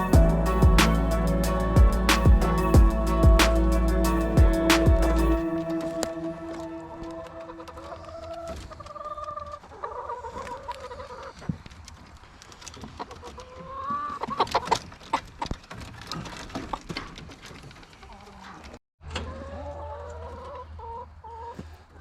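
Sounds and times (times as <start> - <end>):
hens clucking: 6.8 - 11.5, 19.2 - 22.0.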